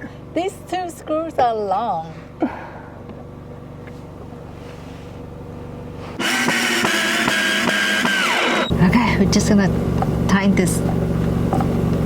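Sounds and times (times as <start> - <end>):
low steady hum: 0.0 - 6.3, 8.3 - 12.0
power drill driving screws: 6.2 - 8.7.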